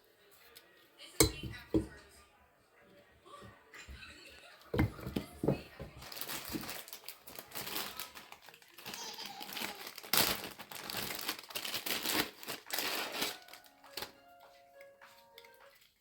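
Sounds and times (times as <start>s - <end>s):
plastic packaging crinkling: 4.8s - 14.3s
background music: 12.4s - 16.0s.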